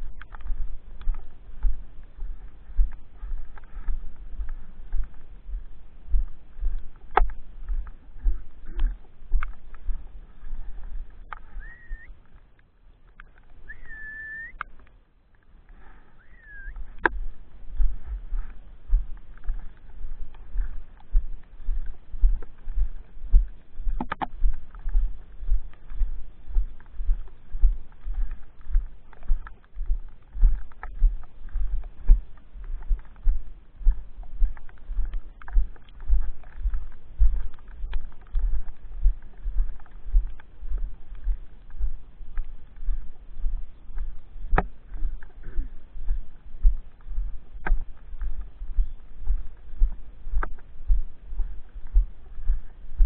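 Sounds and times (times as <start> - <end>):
low rumble: 0.0 - 12.4, 15.6 - 53.0
whistled notes: 11.6 - 12.2, 13.6 - 14.6, 16.2 - 16.8
sharp clicks: 23.9 - 24.8.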